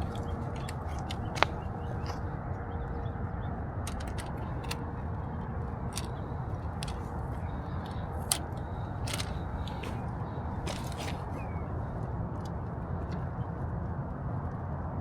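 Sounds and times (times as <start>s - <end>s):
litter crinkling: 0.0s - 2.3s, 3.9s - 5.0s, 5.8s - 12.0s
steady low rumble: 0.0s - 15.0s.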